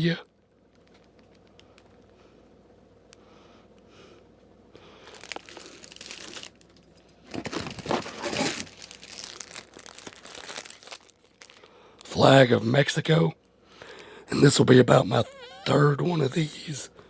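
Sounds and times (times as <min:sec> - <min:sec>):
packaging crinkling and rustling: 0:00.6 - 0:02.1, 0:04.8 - 0:12.4.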